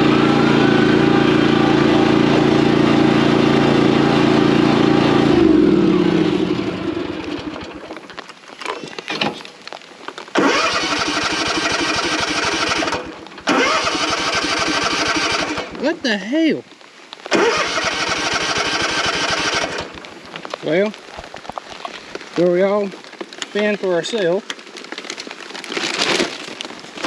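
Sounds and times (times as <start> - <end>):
lawn mower engine running: 0.0 - 8.1, 10.4 - 16.2, 17.3 - 20.0
starter cranking engine: 10.4 - 15.7, 17.3 - 19.9.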